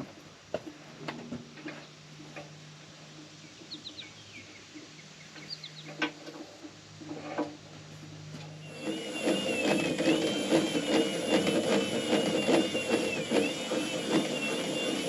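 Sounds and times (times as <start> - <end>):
bird chirping: 3.4 - 6.0.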